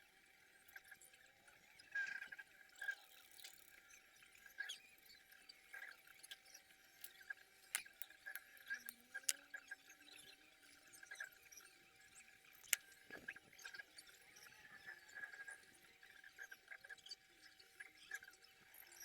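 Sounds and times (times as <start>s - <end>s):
hands working thin wires: 7.0s - 8.4s, 12.6s - 13.3s.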